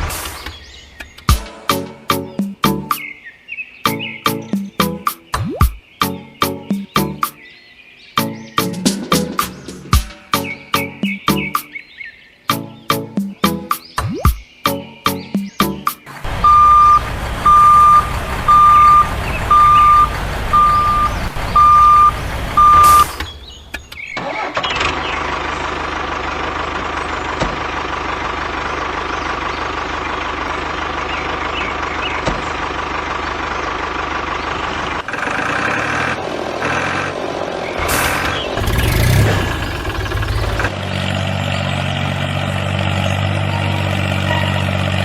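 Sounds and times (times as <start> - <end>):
vehicle engine running: 16.1 - 23.7, 24.7 - 45.0
reversing alarm beeping: 16.4 - 23.2.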